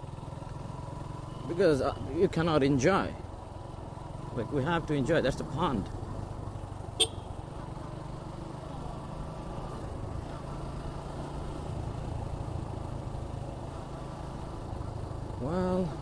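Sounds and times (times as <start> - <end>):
motorcycle engine cruising: 0.0 - 16.0.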